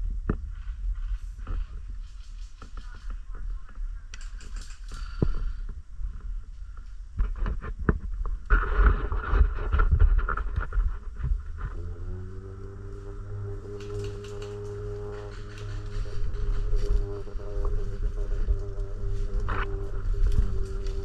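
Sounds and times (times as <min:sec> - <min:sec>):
low rumbling handling noise: 0:00.0 - 0:21.0
clicks and knocks of gear: 0:04.1 - 0:05.2.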